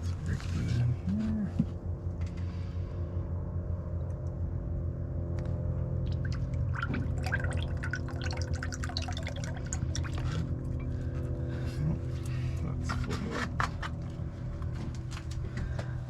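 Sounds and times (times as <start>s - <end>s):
low hum: 0.0s - 16.0s
fluid trickling and dripping: 6.0s - 11.3s.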